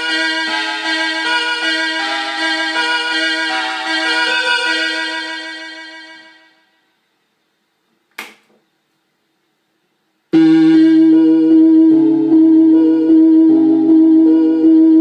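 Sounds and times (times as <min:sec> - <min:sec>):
electronic keyboard organ-like chords: 0:00.0 - 0:06.6, 0:10.4 - 0:15.0.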